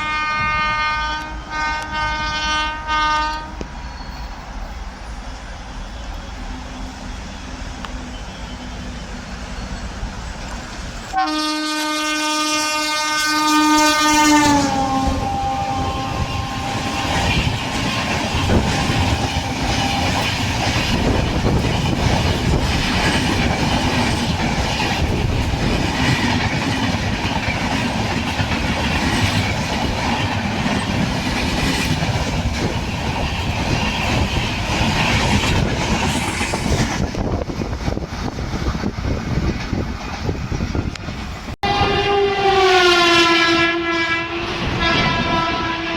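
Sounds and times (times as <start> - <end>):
train horn: 0.0 - 3.7, 11.1 - 20.6, 41.6 - 45.9
train wheels clattering on rails: 14.4 - 41.6.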